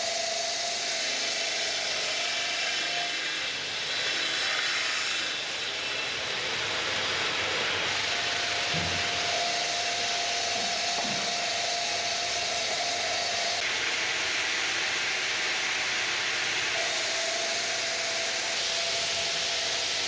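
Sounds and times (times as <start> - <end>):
stone cutting machine hissing: 0.0 - 20.0
steady machine whine: 5.2 - 20.0.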